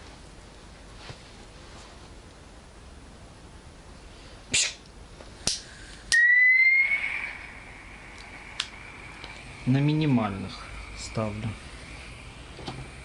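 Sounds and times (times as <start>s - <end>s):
gas hissing: 4.0s - 13.0s
soldering iron whistling: 6.1s - 13.0s.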